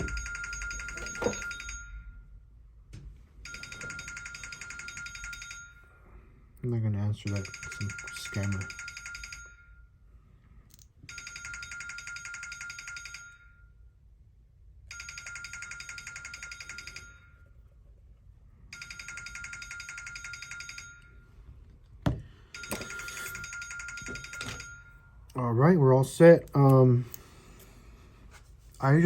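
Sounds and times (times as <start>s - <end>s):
phone ringtone: 0.0s - 2.3s, 3.4s - 6.2s, 7.2s - 10.0s, 11.0s - 13.8s, 14.9s - 17.6s, 18.6s - 21.6s, 22.2s - 25.3s.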